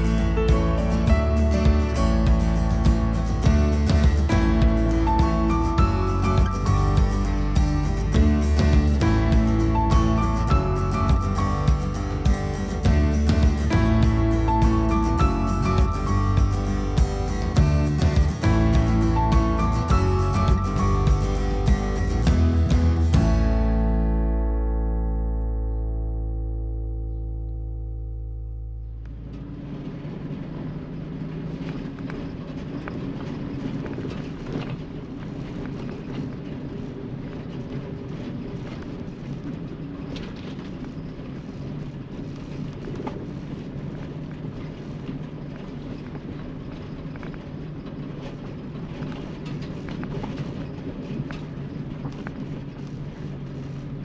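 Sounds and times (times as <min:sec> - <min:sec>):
road noise: 0:00.0 - 0:54.0
vehicle engine drone: 0:00.0 - 0:54.0.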